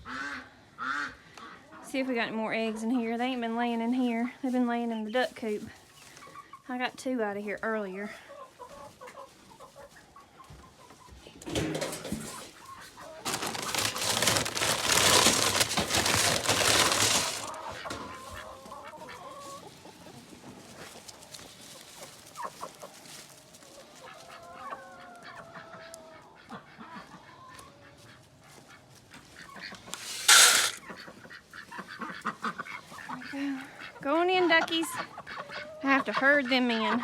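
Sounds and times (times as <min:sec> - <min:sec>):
chickens clucking: 0:00.0 - 0:06.7, 0:07.6 - 0:37.0
loud rustling: 0:13.2 - 0:18.0, 0:29.9 - 0:30.8.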